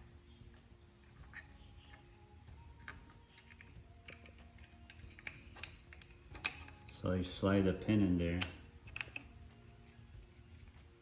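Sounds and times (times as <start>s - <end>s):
low steady hum: 0.0s - 11.0s
small metal parts clicking: 1.0s - 7.1s, 8.4s - 10.8s.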